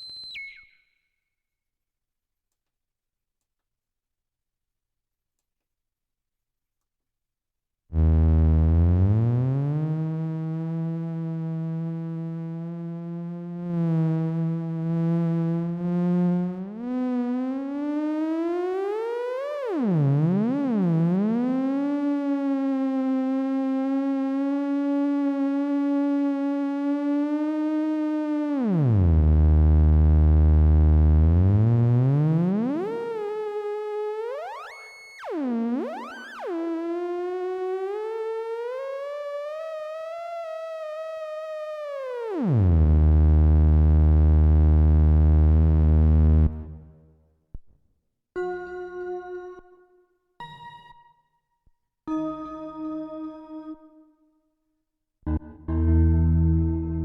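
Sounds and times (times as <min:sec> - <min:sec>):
buzzy theremin tone sliding: 0:08.0 - 0:47.0, 0:55.3 - 0:57.0.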